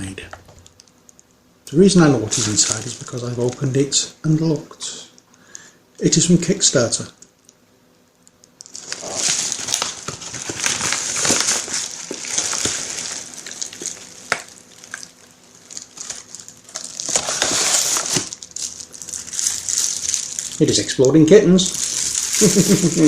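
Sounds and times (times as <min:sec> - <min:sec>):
envelope crinkling and rustling: 0:02.2 - 0:03.9, 0:08.6 - 0:20.9, 0:21.6 - 0:23.0.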